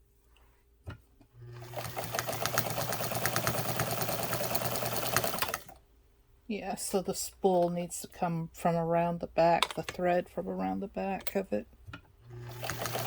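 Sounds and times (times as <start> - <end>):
sewing machine sewing: 1.4 - 5.8, 12.3 - 13.0.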